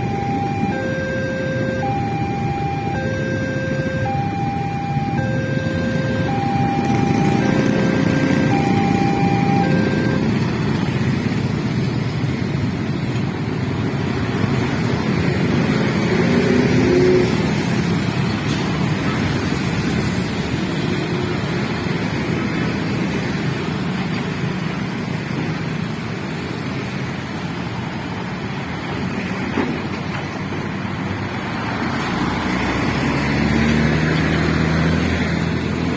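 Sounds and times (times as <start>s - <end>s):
level crossing two-tone beeps: 0.0s - 10.4s
vehicle engine humming close by: 0.0s - 27.5s, 28.7s - 35.9s
road traffic passing: 0.0s - 35.9s.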